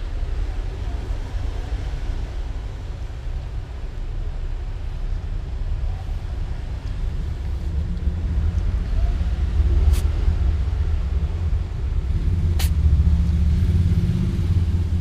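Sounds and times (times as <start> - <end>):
steady low rumble: 0.0 - 15.0
sharp click: 12.6 - 12.8.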